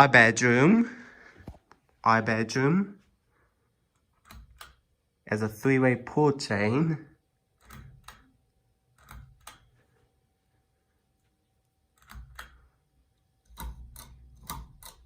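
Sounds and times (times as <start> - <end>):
pull-chain switch clicking: 3.9 - 4.9, 7.6 - 8.4, 9.0 - 9.8, 12.0 - 12.7.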